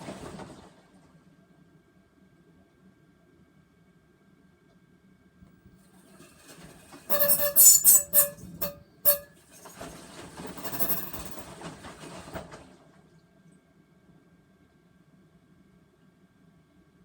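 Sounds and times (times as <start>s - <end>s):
washing machine rattling: 6.1s - 12.6s.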